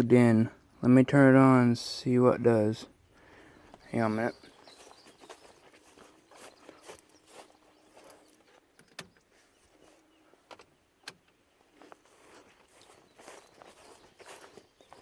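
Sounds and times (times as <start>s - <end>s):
faint rustling: 11.6s - 15.0s.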